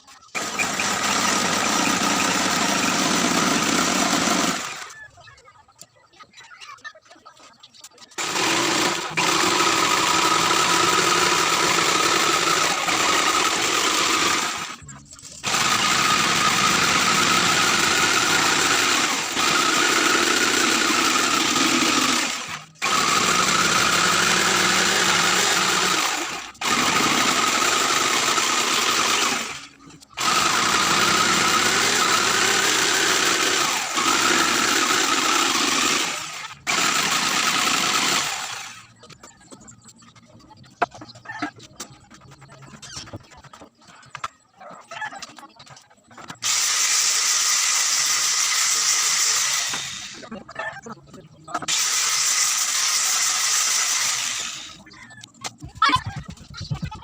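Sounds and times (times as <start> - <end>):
electric power tool running: 0.3 - 4.9, 8.2 - 14.8, 15.4 - 38.8, 46.4 - 50.2, 51.7 - 54.8.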